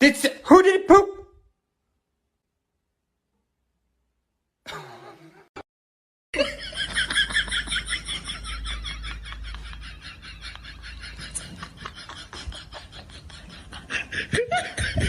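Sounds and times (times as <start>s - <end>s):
person snickering: 4.7s - 5.6s, 6.4s - 15.0s.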